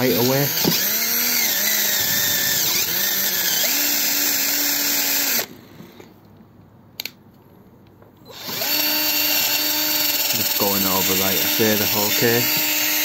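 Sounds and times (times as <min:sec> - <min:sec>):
power drill grinding metal: 0:00.0 - 0:05.5, 0:08.3 - 0:13.0.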